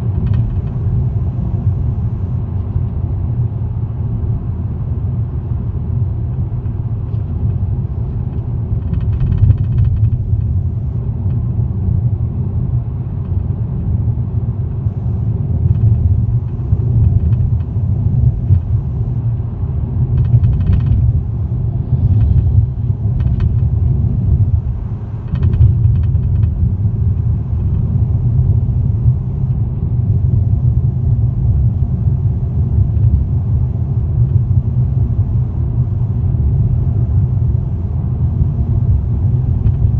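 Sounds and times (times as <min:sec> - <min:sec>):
car low rumble: 0:00.0 - 0:39.9
car rattle: 0:23.0 - 0:29.5.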